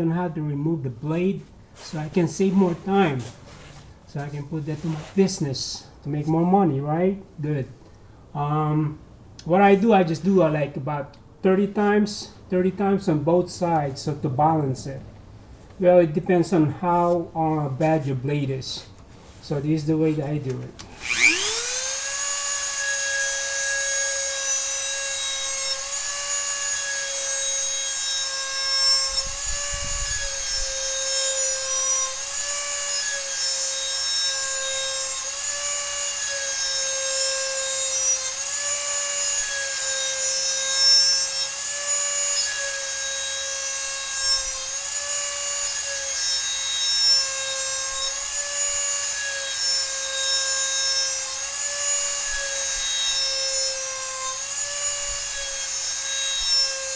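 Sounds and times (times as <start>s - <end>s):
rotary tool grinding metal: 20.5s - 56.9s.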